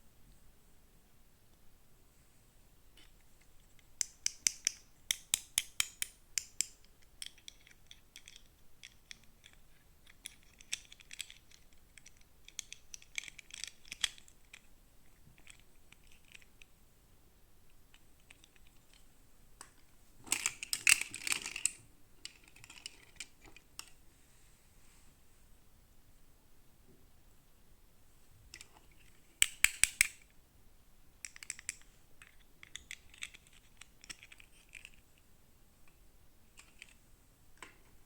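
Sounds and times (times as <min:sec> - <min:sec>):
toy packaging clicks: 0:20.3 - 0:23.9, 0:29.4 - 0:30.2.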